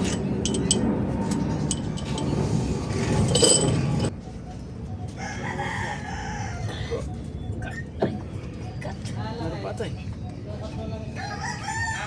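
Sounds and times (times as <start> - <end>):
metal tools clinking: 0.0 - 4.1.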